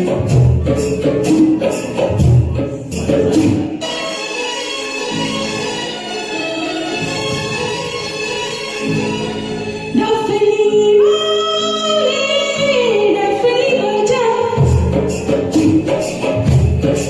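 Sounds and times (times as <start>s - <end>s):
drum beat with hand-drum strikes: 0.0s - 3.8s, 14.6s - 17.0s
backing track: 0.0s - 17.0s
woman singing: 9.9s - 14.9s.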